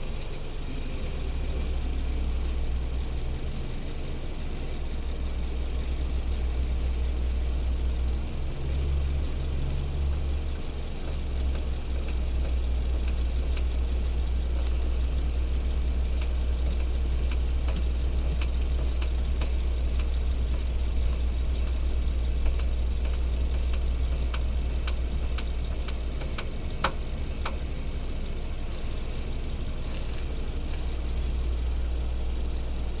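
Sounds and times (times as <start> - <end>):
low engine drone: 0.0 - 33.0
steering rack knocking: 22.4 - 27.8.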